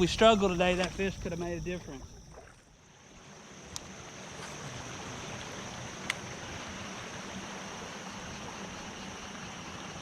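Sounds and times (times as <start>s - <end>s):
river water flowing: 0.0s - 10.0s.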